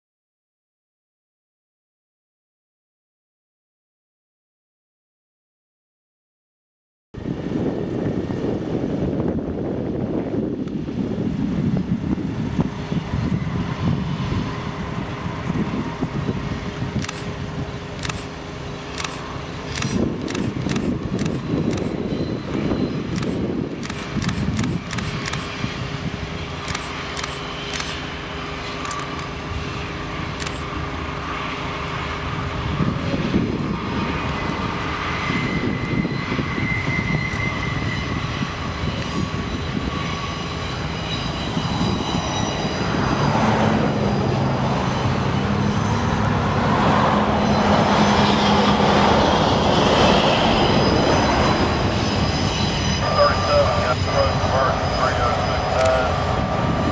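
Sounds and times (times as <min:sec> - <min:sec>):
diesel locomotive engines droning: 0:07.2 - 0:56.9
train wheel and rail noise: 0:14.7 - 0:25.6, 0:26.2 - 0:56.1
wheels squealing: 0:35.3 - 0:53.2.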